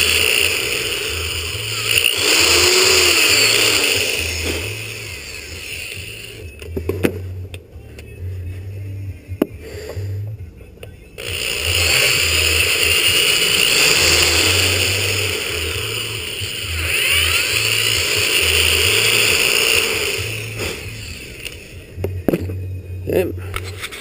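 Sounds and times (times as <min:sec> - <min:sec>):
electric hand drill: 0:00.0 - 0:06.5, 0:11.2 - 0:21.9.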